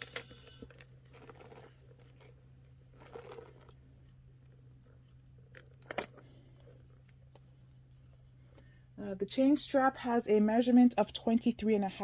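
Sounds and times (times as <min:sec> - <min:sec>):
handbag rustling: 0:00.0 - 0:07.5
steady low hum: 0:00.0 - 0:12.0.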